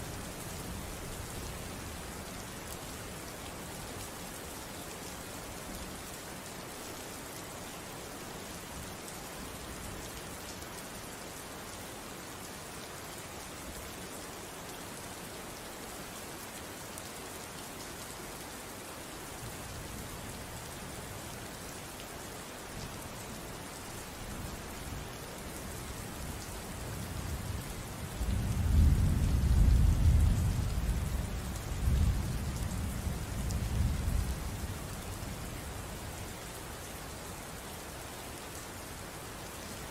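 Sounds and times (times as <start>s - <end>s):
steady rain falling: 0.0s - 39.9s
low rumble of thunder: 27.0s - 35.4s.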